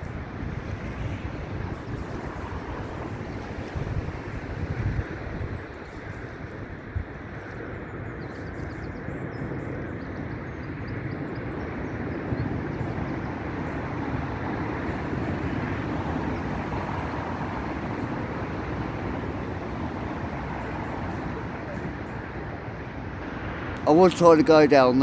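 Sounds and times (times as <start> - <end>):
floodwater rushing: 0.0 - 8.0, 13.4 - 25.0.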